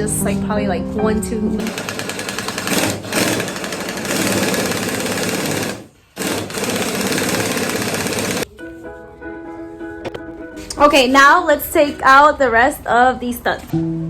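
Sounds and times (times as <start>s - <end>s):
power tool hammering on metal: 1.6s - 8.4s.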